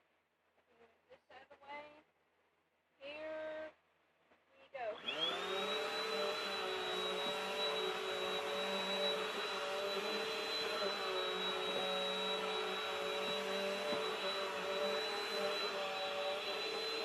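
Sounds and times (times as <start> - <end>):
vacuum cleaner running: 4.9 - 17.0.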